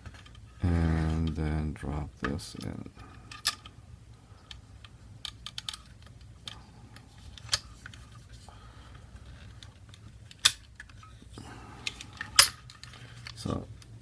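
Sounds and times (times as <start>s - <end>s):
small parts clicking and tapping: 2.2s - 3.8s, 4.4s - 8.1s, 8.9s - 14.0s.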